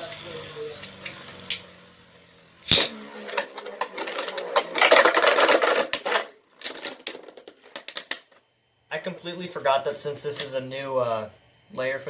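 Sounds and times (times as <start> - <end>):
plastic clack of launcher: 2.7 - 8.2.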